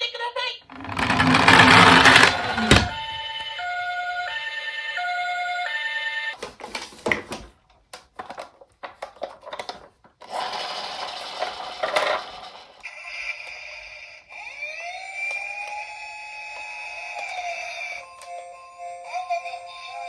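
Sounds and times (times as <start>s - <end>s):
plastic clicks and rattles: 0.7s - 3.2s, 6.4s - 10.2s
toy two-tone siren: 3.2s - 6.4s, 12.9s - 20.0s.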